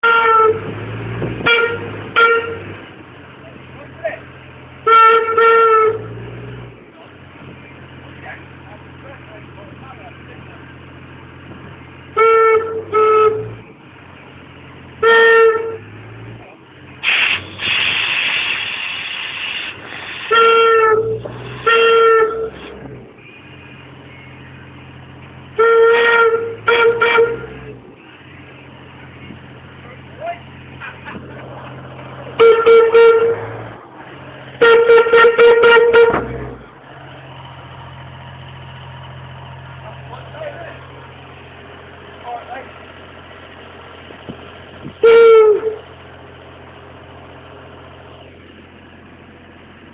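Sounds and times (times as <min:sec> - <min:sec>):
steam whistle toots: 0:00.0 - 0:00.6, 0:01.4 - 0:02.7, 0:04.8 - 0:06.2, 0:12.2 - 0:13.6, 0:15.0 - 0:15.8, 0:17.0 - 0:23.6, 0:25.6 - 0:27.6, 0:32.4 - 0:33.6, 0:34.6 - 0:36.5, 0:45.0 - 0:45.8
steam hissing: 0:17.0 - 0:20.4.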